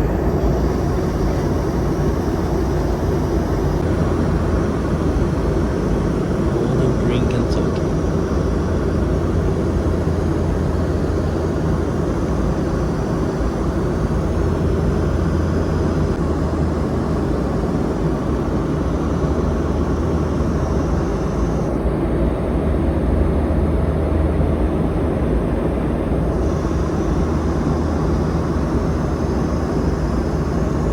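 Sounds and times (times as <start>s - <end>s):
low hum: 0.0s - 21.7s
jet engine drone in cabin: 0.0s - 30.9s.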